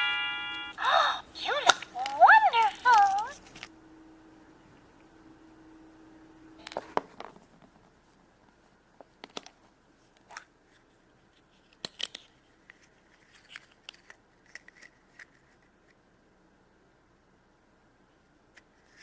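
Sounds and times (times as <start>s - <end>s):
plastic toys clicking and tapping: 1.6s - 3.4s.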